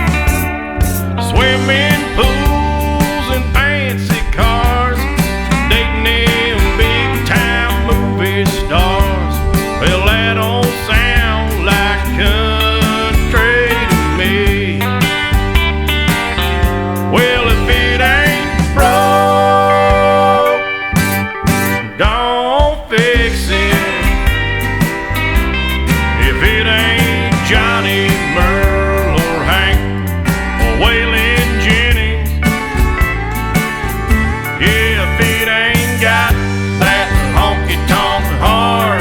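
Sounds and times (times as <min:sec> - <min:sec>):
country music with guitar: 0:00.0 - 0:39.0.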